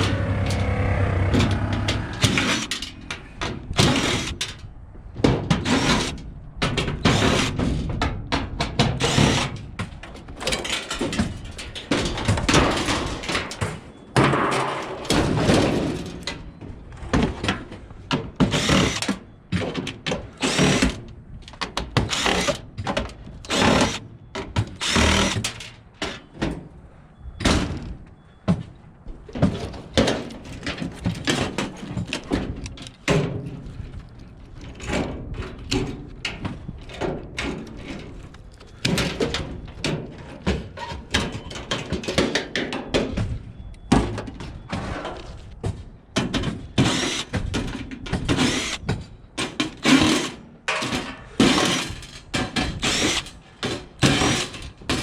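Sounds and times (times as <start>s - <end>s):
hard objects clanking and thudding: 0.0s - 4.4s, 27.4s - 55.0s.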